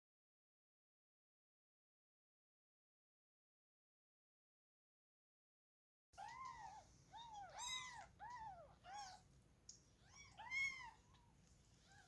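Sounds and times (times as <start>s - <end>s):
kitten meowing: 6.2s - 9.2s, 10.0s - 11.0s.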